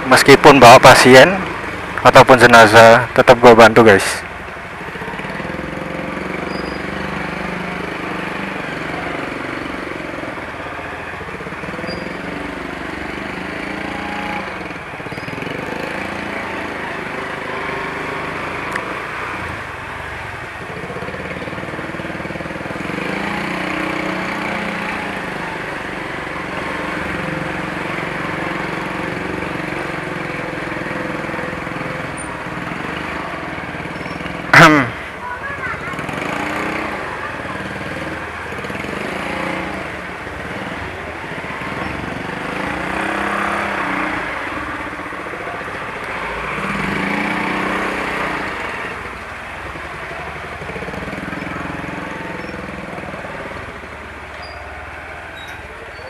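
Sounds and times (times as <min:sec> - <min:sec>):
road noise: 0:00.0 - 0:56.0.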